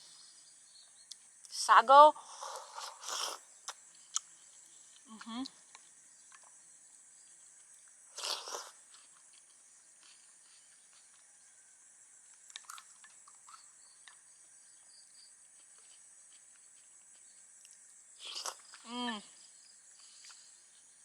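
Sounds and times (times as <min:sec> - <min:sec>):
crickets chirping: 0:00.0 - 0:21.0
person eating and chewing: 0:08.2 - 0:10.6, 0:12.4 - 0:13.6, 0:17.6 - 0:18.8.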